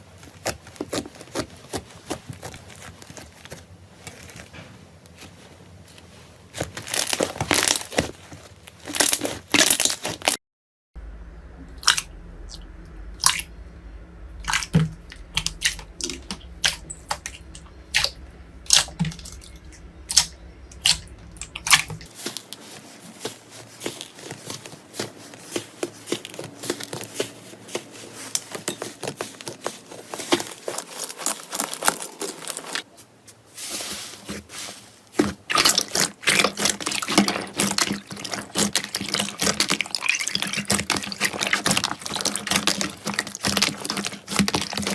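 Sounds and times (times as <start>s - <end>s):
slime crackling and popping: 6.6s - 8.1s.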